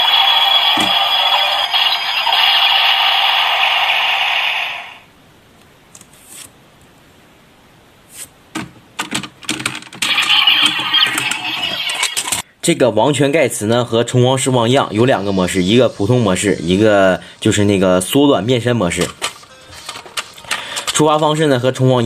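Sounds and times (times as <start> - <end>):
toy electronic sound effect: 0.0 - 5.0, 10.0 - 12.4, 14.9 - 16.9
plastic toy clicks and rattles: 9.0 - 12.4, 18.9 - 21.1.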